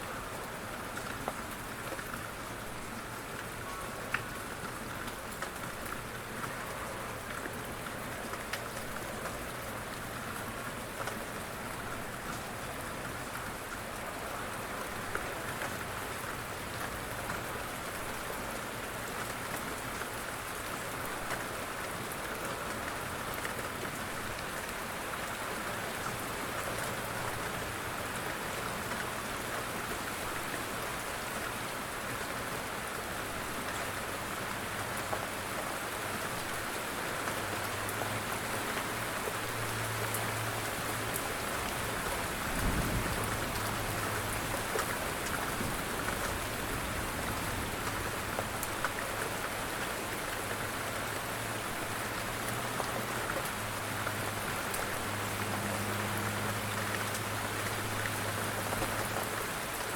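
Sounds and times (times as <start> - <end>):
rain pattering: 0.0 - 59.9.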